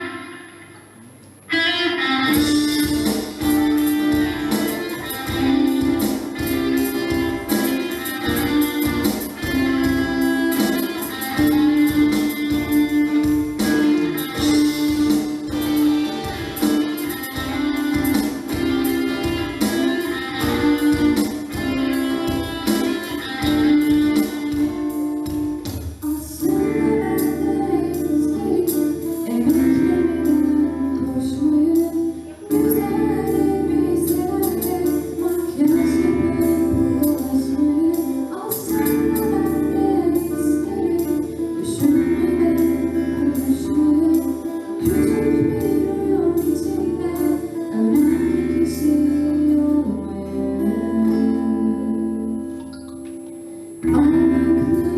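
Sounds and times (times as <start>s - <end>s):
guitars playing: 0.0s - 54.9s
steady beat: 2.3s - 26.3s.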